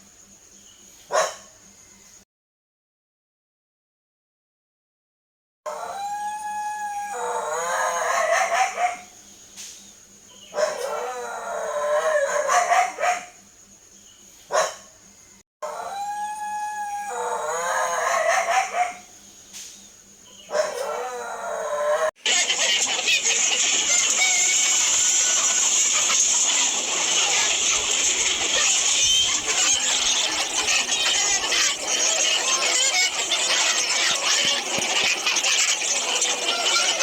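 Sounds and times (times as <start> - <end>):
dog yipping: 1.1 - 1.4, 8.1 - 9.1, 10.6 - 11.1, 12.2 - 13.3, 14.5 - 14.9, 18.0 - 19.1, 20.5 - 21.1
dog howling: 5.7 - 9.0, 10.6 - 13.2, 15.6 - 19.0, 20.5 - 22.1.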